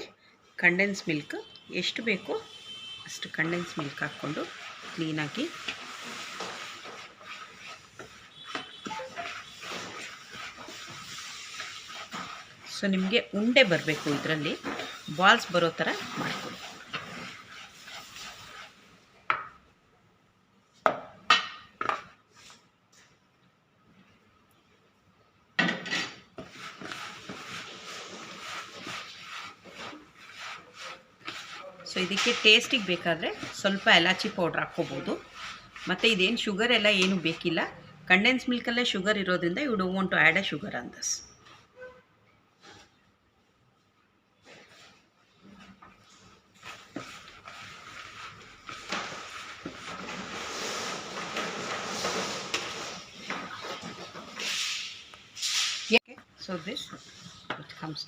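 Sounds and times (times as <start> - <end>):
spoon stirring thick mixture: 0.9 - 19.7, 26.4 - 37.5, 44.6 - 54.4.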